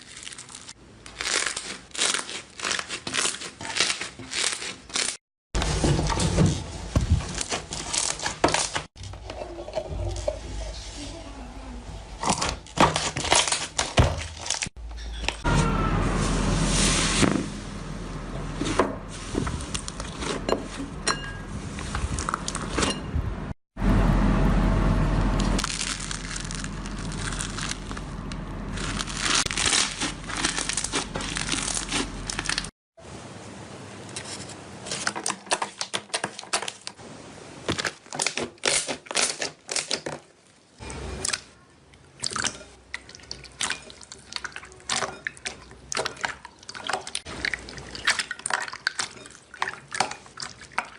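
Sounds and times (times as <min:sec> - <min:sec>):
low hum: 0:22.5 - 0:29.6
slime squelching: 0:28.7 - 0:32.7, 0:37.7 - 0:50.9.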